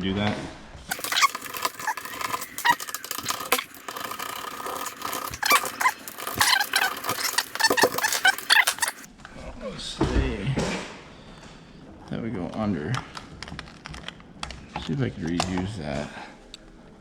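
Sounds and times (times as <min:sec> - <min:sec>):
short squeaks: 0:00.9 - 0:09.1.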